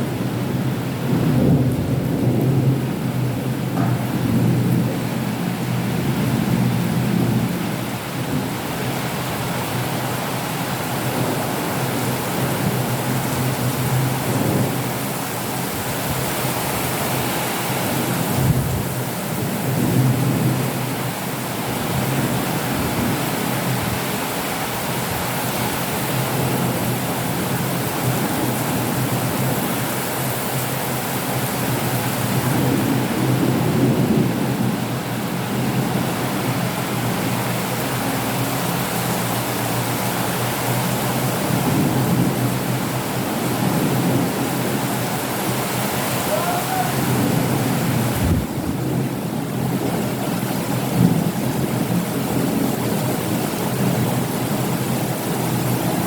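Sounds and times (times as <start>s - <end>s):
thunder rumbling: 0.0s - 9.8s, 31.6s - 56.0s
heavy rain: 0.0s - 56.0s.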